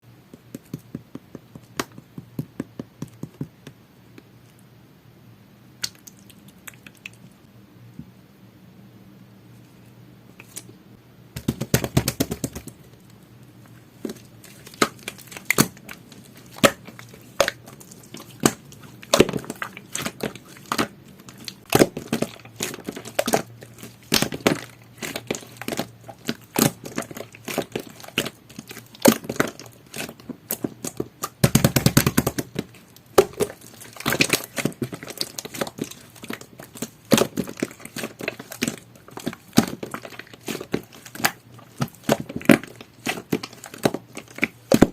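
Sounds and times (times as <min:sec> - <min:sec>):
slime crackling and popping: 0:14.0 - 0:44.9.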